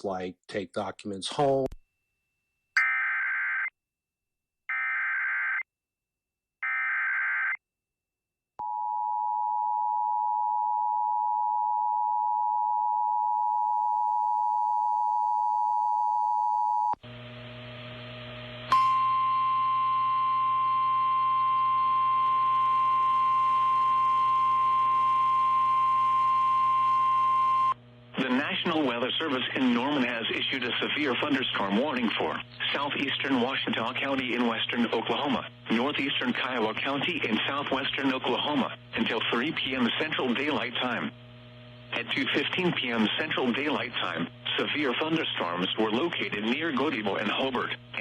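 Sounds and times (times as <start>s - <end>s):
steady warning alarm tone: 18.7s - 28.6s
humming radio relay: 21.2s - 48.0s.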